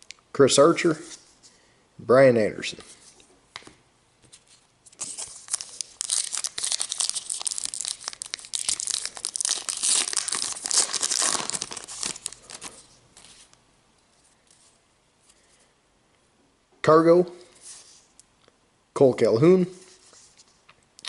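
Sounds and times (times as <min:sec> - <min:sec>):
foil wrapper tearing and crinkling: 0:05.0 - 0:12.8.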